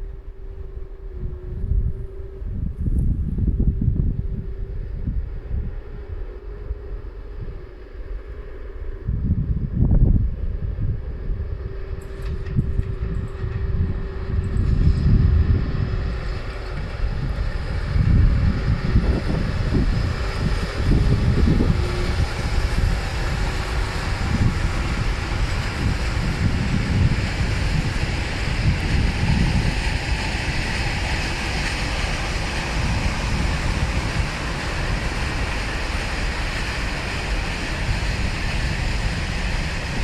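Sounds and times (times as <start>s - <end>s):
wind buffeting microphone: 0.0s - 40.0s
freight train wheels rumbling: 9.9s - 40.0s.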